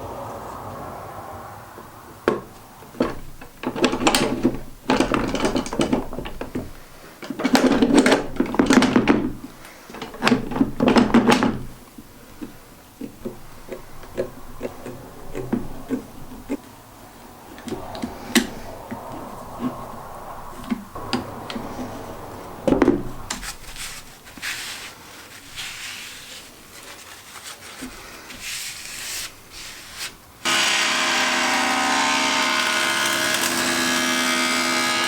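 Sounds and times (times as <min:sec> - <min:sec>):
plywood scraping: 0:17.6 - 0:35.0.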